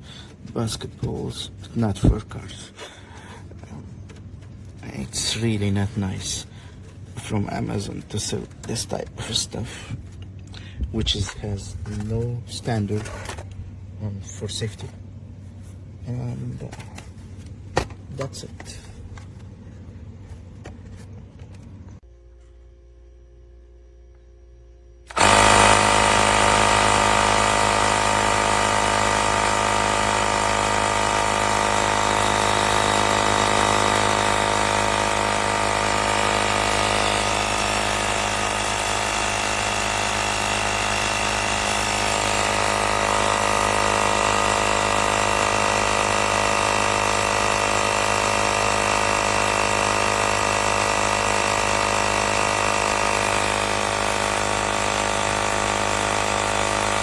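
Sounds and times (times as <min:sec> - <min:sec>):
air compressor buzzing: 0:25.0 - 0:57.0.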